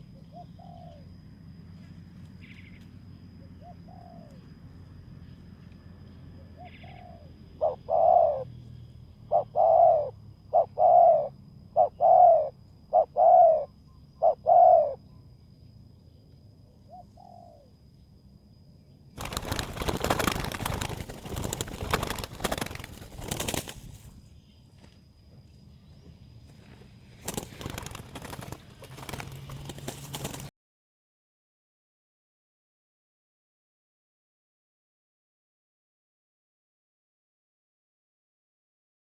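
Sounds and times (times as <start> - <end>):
dove cooing: 0.0 - 1.1, 3.4 - 4.4, 6.4 - 8.6, 9.2 - 15.0
loud rustling: 19.2 - 24.1.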